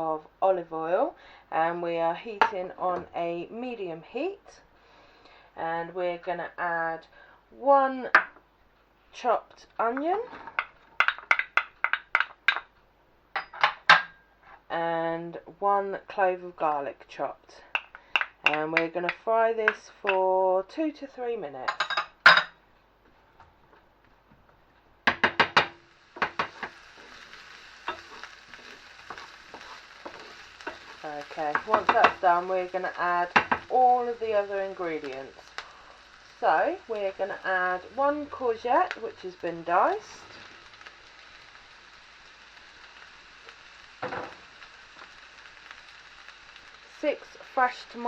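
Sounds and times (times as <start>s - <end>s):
onion frying sizzle: 0.0s - 48.0s
stirring knocks: 25.0s - 27.3s, 27.9s - 33.8s
metallic taps on pan: 25.1s - 26.8s.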